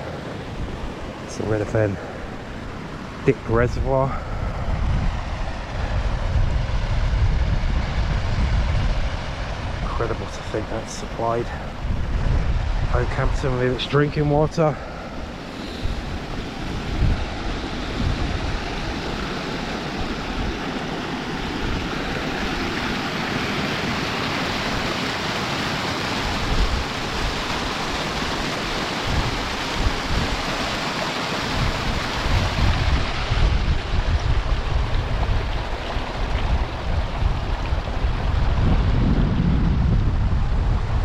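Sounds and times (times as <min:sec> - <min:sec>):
wind buffeting microphone: 0:00.0 - 0:25.1, 0:26.1 - 0:30.8, 0:31.5 - 0:41.0
steady rushing hiss: 0:08.4 - 0:33.0.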